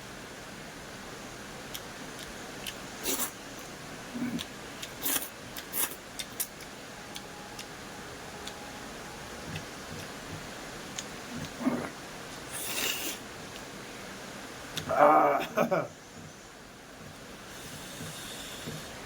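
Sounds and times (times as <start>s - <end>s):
faint hiss: 5.0s - 14.6s, 15.8s - 19.0s.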